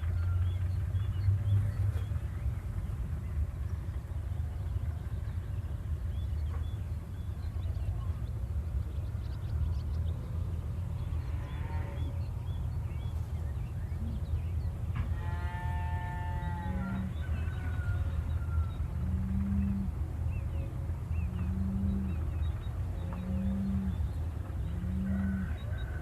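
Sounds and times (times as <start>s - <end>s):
steady low rumble: 0.0s - 26.0s
cow mooing: 11.2s - 12.2s, 15.1s - 17.1s.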